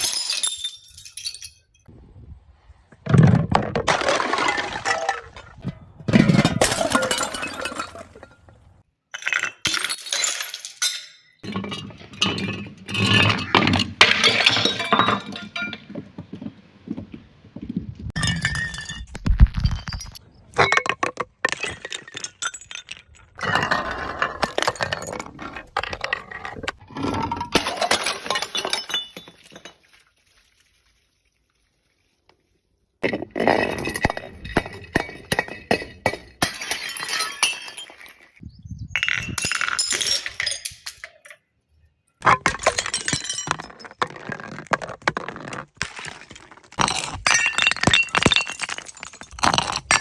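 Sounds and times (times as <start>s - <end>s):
glass bottles shattering: 0.0s - 1.9s, 3.8s - 15.9s, 18.2s - 26.1s, 27.1s - 30.2s, 33.0s - 38.4s, 39.0s - 41.5s, 42.2s - 50.0s
glass shards clinking: 0.0s - 1.9s, 6.3s - 15.8s, 39.0s - 41.4s.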